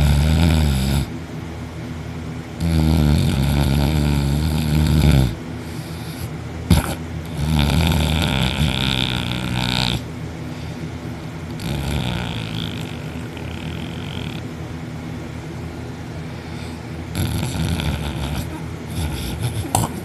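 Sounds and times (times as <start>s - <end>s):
man snoring loudly: 0.0s - 1.1s, 2.6s - 10.1s, 11.6s - 14.4s, 17.1s - 19.9s.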